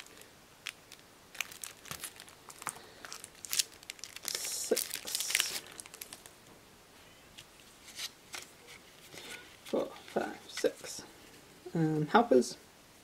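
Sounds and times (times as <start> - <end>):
packaging crinkling and tearing: 0.0 - 6.4.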